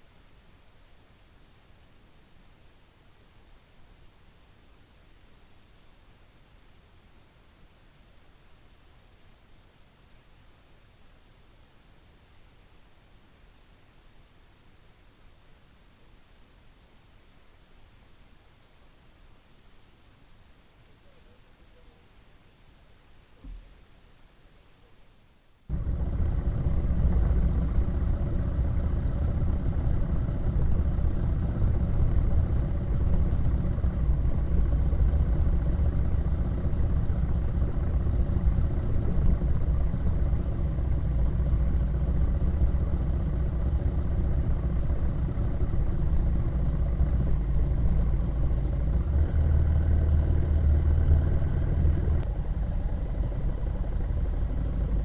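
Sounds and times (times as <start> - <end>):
vehicle engine running: 25.7 - 55.0.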